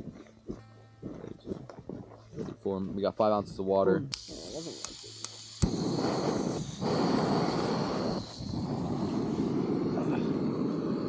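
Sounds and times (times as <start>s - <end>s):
gas stove burner roaring hiss: 4.1s - 11.0s.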